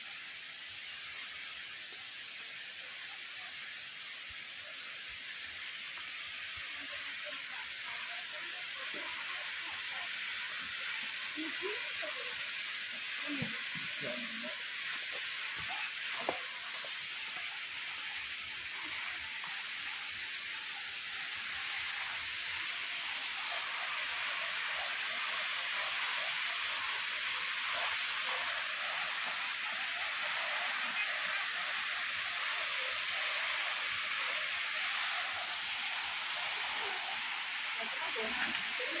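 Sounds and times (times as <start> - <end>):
waterfall rushing: 20.8 - 39.0.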